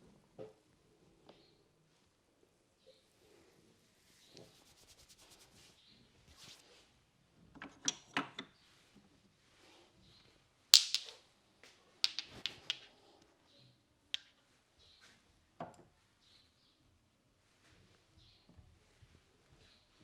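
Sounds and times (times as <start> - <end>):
hands slapping head and neck: 10.8 - 11.1, 12.1 - 12.9.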